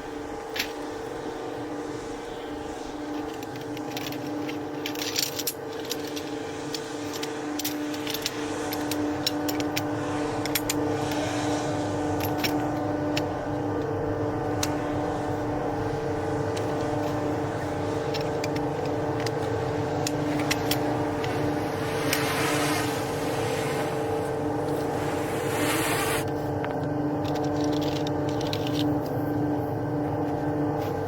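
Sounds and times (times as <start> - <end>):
vehicle engine running: 5.7 - 29.7
rushing hiss: 9.8 - 13.1, 19.5 - 26.3.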